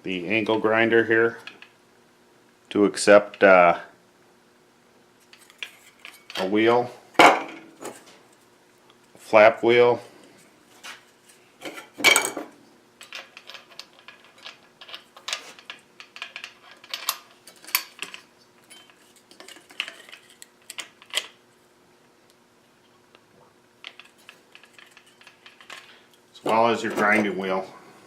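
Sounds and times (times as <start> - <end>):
metal clinks and knocks: 23.8 - 25.9.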